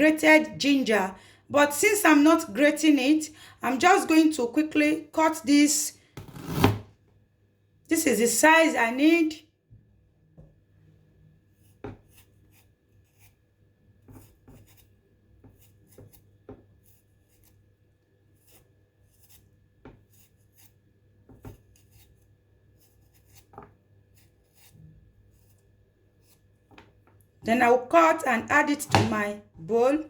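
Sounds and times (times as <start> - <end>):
knife scraping ginger: 6.2 - 6.8, 11.5 - 26.7.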